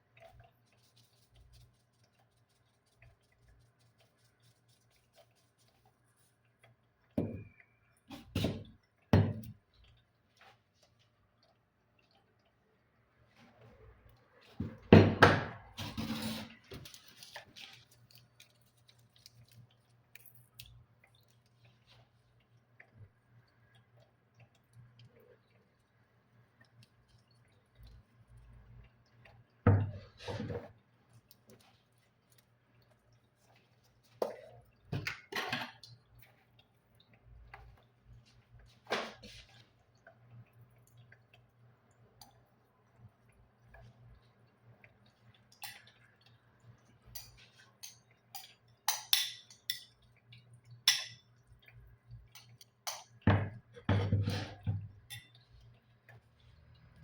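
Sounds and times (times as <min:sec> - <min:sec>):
kitchen utensils and dishes clinking: 0:52.4 - 0:55.4.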